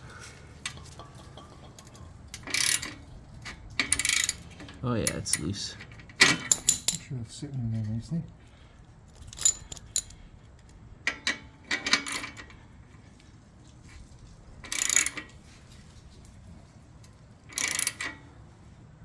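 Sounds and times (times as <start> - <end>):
metal clicks: 0.6 - 7.0, 9.1 - 12.6
ratchet wrench clicking: 1.8 - 7.0, 9.1 - 12.6, 14.6 - 15.4, 17.5 - 18.2.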